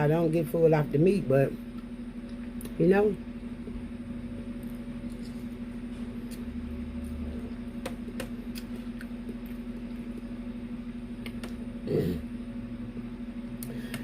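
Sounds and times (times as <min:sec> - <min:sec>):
steady low hum: 0:00.0 - 0:14.0
soft eating clicks and mouth sounds: 0:01.7 - 0:02.8, 0:04.5 - 0:05.6, 0:06.2 - 0:10.4, 0:11.2 - 0:11.7.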